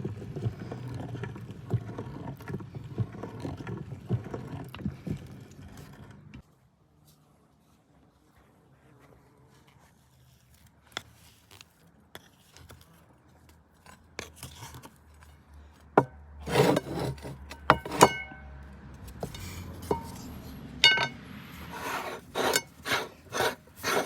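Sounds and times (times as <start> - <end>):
meat grinder parts clicking and scraping: 0.0 - 6.4, 13.5 - 24.0.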